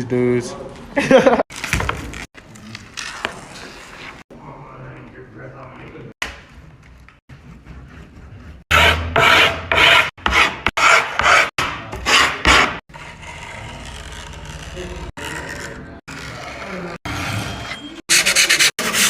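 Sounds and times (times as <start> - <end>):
file rasping on board edge: 7.3 - 14.7.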